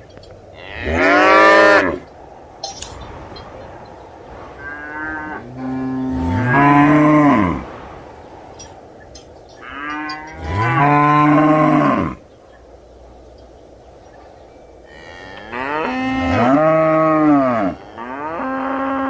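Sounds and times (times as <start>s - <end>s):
cow mooing: 0.6s - 2.0s, 4.5s - 7.8s, 9.6s - 12.2s, 14.9s - 19.0s.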